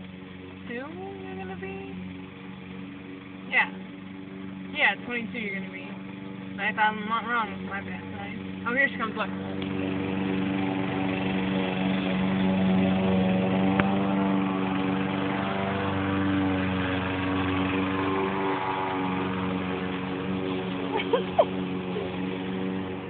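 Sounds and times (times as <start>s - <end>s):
lawn mower engine running: 0.0s - 23.0s.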